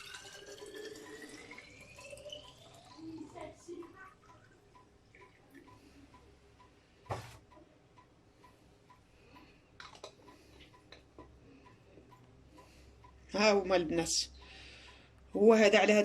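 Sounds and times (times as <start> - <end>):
clock ticking: 0.1 - 16.0.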